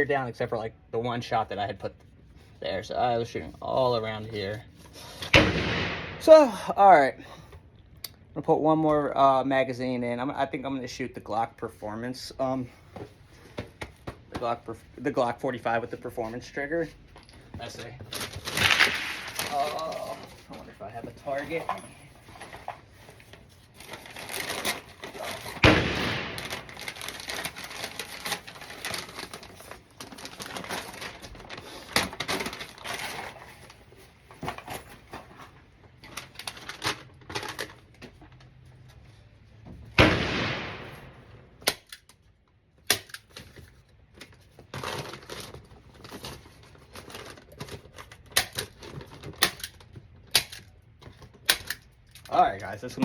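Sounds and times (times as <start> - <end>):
loud gunshots with echo: 5.4 - 6.3, 25.6 - 26.7, 40.0 - 41.3.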